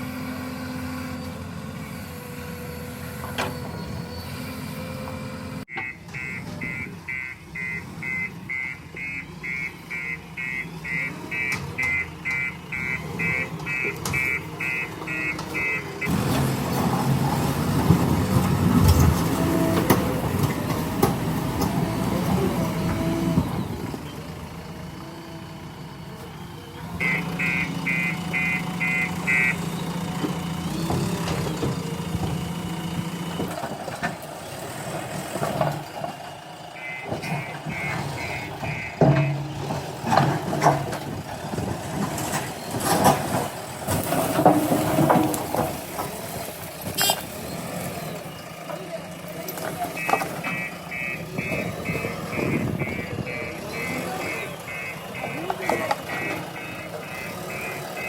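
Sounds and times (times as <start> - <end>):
diesel engine working: 0.0 - 58.0
reversing alarm beeps: 5.7 - 16.1, 27.0 - 29.6, 36.8 - 39.5, 49.9 - 58.0.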